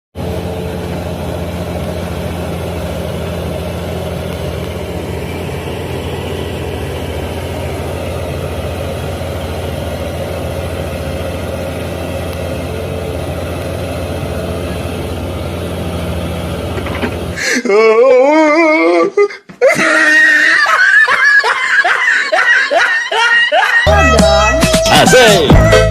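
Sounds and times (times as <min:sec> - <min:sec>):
excavator diesel engine drone: 0:00.1 - 0:17.7
loud laughter: 0:17.7 - 0:24.1.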